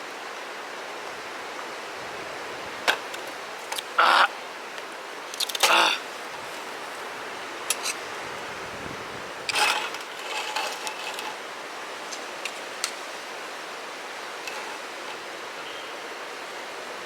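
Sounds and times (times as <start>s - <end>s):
wind: 0.0s - 17.0s
clatter of handled objects: 9.5s - 11.4s.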